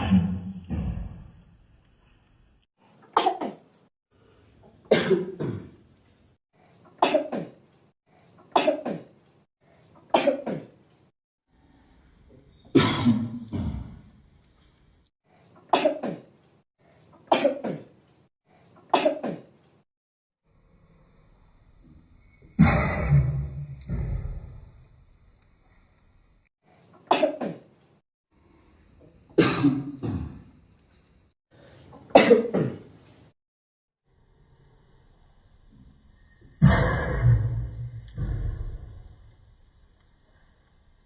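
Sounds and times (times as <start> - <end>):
person coughing: 3.2 - 3.6, 4.9 - 5.8, 7.0 - 7.6, 8.5 - 9.1, 10.1 - 10.8, 12.8 - 13.9, 15.7 - 16.3, 17.3 - 17.9, 18.9 - 19.5, 27.1 - 27.6, 29.4 - 30.4, 32.1 - 32.9.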